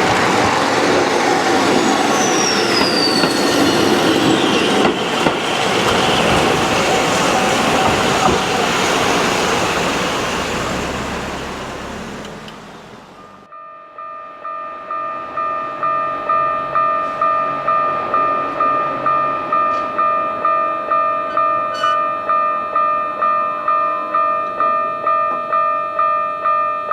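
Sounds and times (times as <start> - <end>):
train running past: 0.0 - 13.5.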